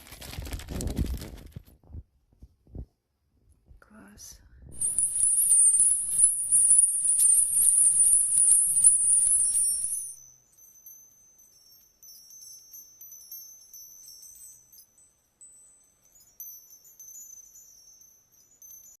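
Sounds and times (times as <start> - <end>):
small bells jingling: 4.8 - 19.0.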